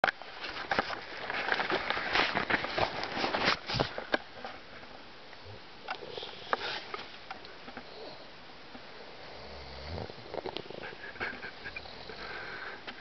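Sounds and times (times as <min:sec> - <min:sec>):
rustling: 0:00.2 - 0:05.0
man snoring: 0:09.2 - 0:10.4.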